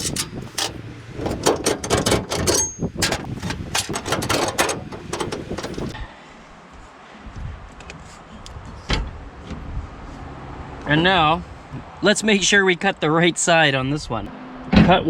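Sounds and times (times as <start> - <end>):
metal brackets clanking: 0.0 - 6.0.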